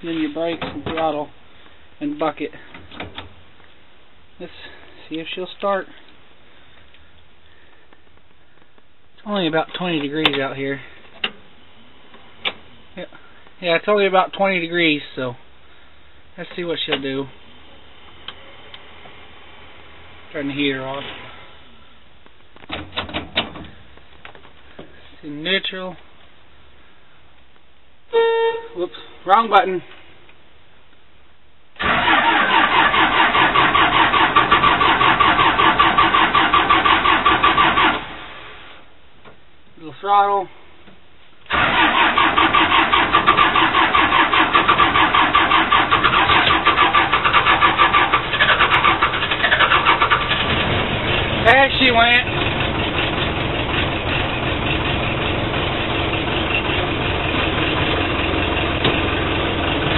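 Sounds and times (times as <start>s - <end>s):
diesel engine cranking on starter: 31.8s - 38.5s, 41.5s - 59.9s.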